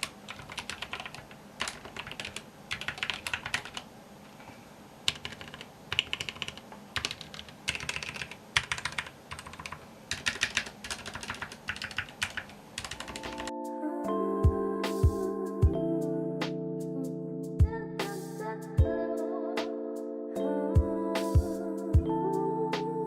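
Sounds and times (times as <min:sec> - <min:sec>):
typing on mechanical keyboard: 0:00.0 - 0:03.9, 0:05.1 - 0:13.5.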